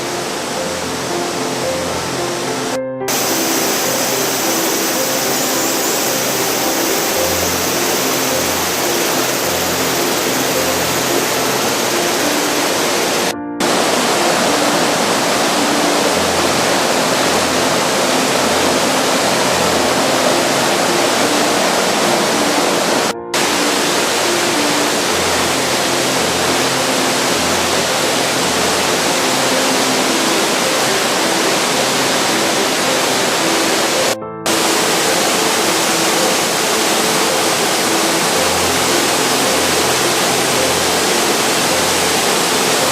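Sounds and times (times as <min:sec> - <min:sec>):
waterfall roaring: 0:00.0 - 0:42.9.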